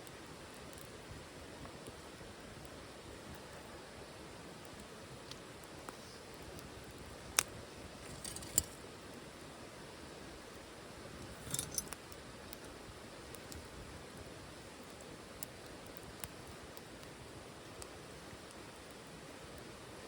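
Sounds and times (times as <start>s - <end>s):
wood fire crackling in a stove: 0.0s - 20.0s.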